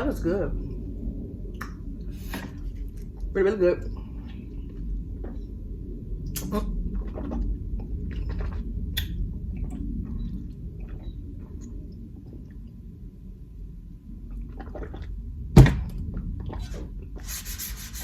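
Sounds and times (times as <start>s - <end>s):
mouth eating sounds: 6.3s - 7.4s.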